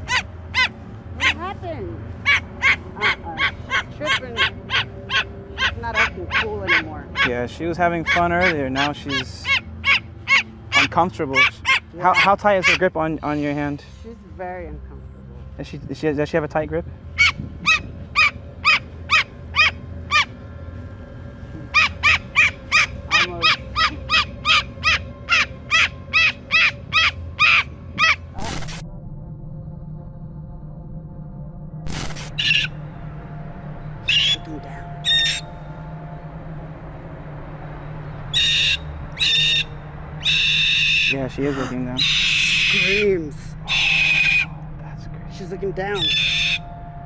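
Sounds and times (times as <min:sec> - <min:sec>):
pet bird calling: 0:00.0 - 0:12.9, 0:17.2 - 0:20.3, 0:21.6 - 0:28.8, 0:31.9 - 0:32.8, 0:34.1 - 0:35.6, 0:38.3 - 0:44.5, 0:46.0 - 0:46.6.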